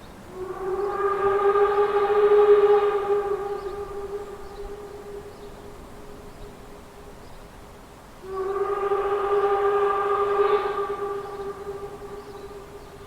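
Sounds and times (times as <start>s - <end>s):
locomotive whistle blast: 8.2s - 12.5s.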